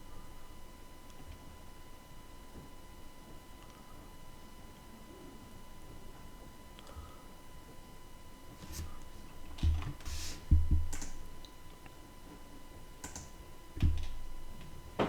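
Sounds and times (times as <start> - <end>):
dull knock on desk: 9.6 - 10.9
computer mouse and keyboard clicks: 9.6 - 11.2, 13.0 - 14.2.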